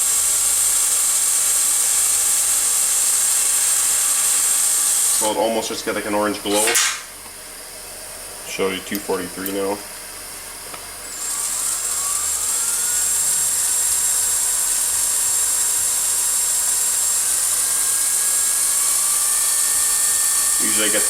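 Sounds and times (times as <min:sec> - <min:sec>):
gas torch flame hissing: 0:06.3 - 0:07.1.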